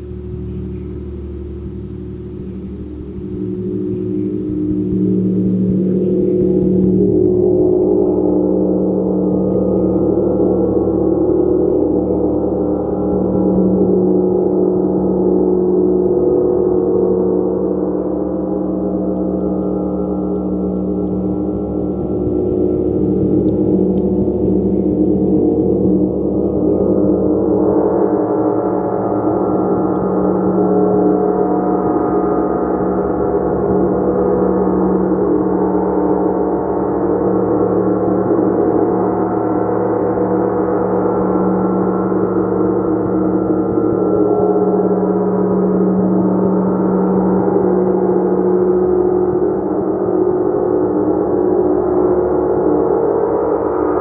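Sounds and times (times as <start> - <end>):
gong ringing: 0.0 - 7.3, 17.5 - 27.5.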